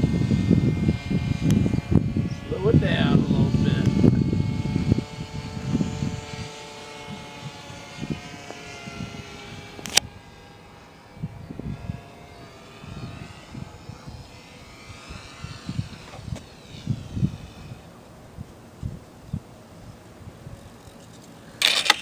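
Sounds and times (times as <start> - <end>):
wind gusts on microphone: 0.0 - 20.9
model plane motor whining: 0.0 - 22.0
sharp click: 21.6 - 22.0.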